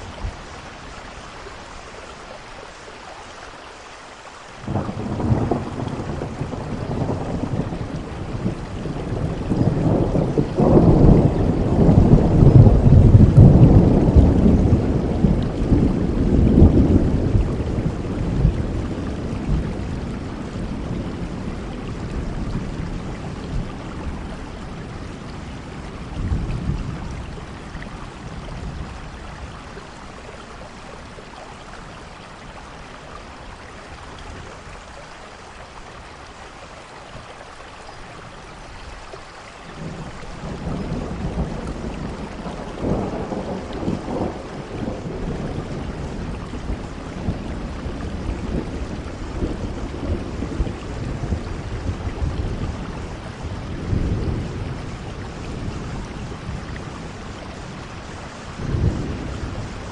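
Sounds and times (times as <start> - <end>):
steady rain: 0.0 - 59.9
thunder rumbling: 4.6 - 31.3, 39.7 - 59.9.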